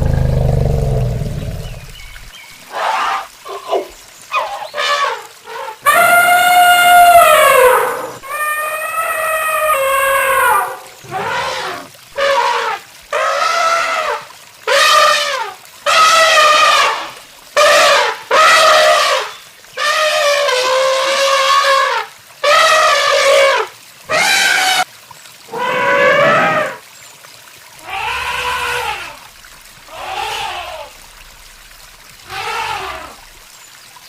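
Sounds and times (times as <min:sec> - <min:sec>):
animal calling: 0:00.0 - 0:17.0, 0:27.8 - 0:29.2, 0:29.9 - 0:31.0, 0:32.2 - 0:33.4.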